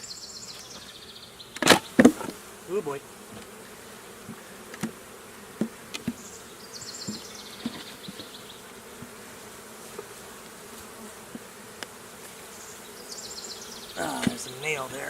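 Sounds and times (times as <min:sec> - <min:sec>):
honeybees buzzing: 0:00.0 - 0:15.0.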